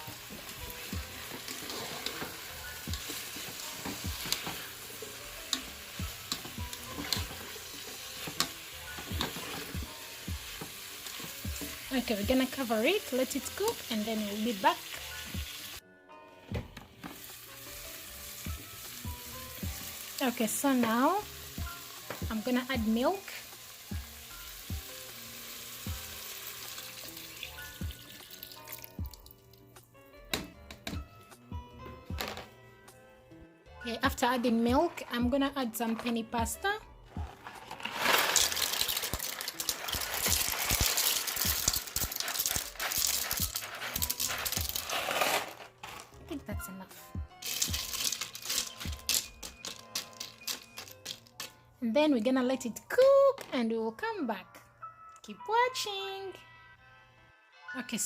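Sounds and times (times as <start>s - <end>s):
food sizzling in oil: 0.0s - 15.8s, 17.1s - 29.0s, 37.5s - 45.4s, 47.4s - 51.4s
background music with soft beat: 0.0s - 58.0s.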